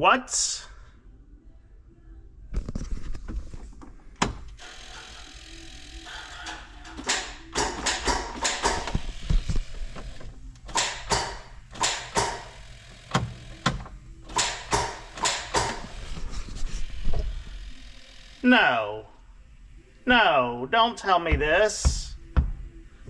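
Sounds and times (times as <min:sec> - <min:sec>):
starter motor clicking: 0:04.6 - 0:16.1.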